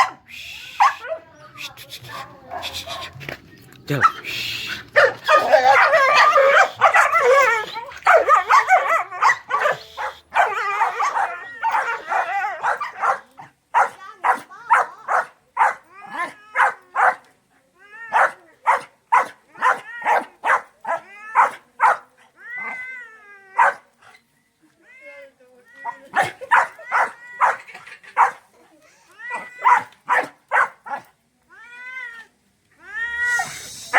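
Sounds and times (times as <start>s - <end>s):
dogs barking and yelping: 0.0s - 1.3s, 2.0s - 17.3s, 18.1s - 22.8s, 23.6s - 24.2s, 25.8s - 28.5s, 29.3s - 31.1s.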